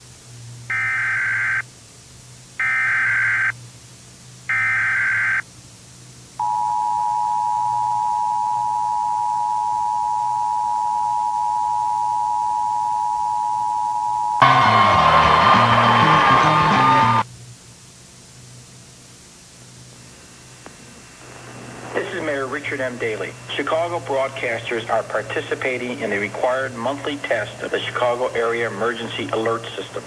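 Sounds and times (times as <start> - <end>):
two-tone attention signal: 6.4 - 14.5
loud sound cutting in: 21.0 - 24.4.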